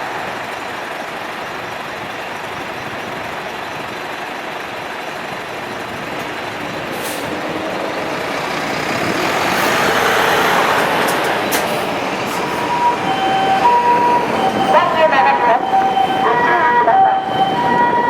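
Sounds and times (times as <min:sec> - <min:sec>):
heavy vehicle engine and tyres: 0:00.0 - 0:18.0
ambulance hi-lo siren: 0:12.3 - 0:18.0.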